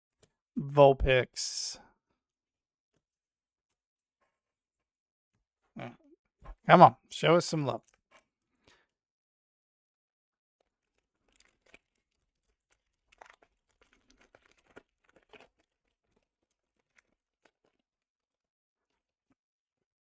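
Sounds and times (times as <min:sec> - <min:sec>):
foil wrapper tearing and crinkling: 0:10.6 - 0:17.9.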